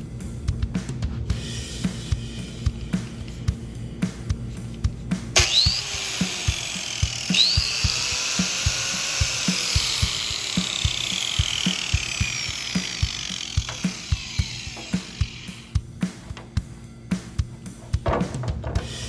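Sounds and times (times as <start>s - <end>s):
background music with drum beat: 0.0s - 19.0s
angle grinder whining: 5.4s - 15.8s.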